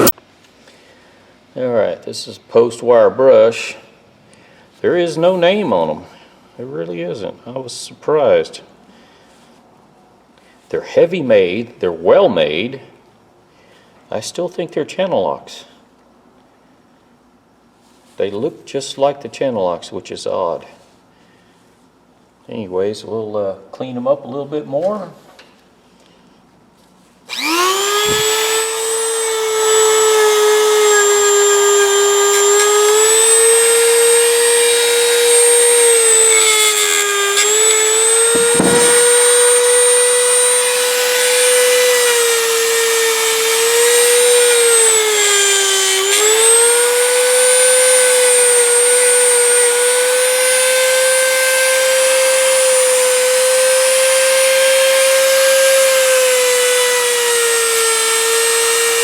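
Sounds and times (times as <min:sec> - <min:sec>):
wire wheel power tool whining: 0:27.3 - 0:59.0.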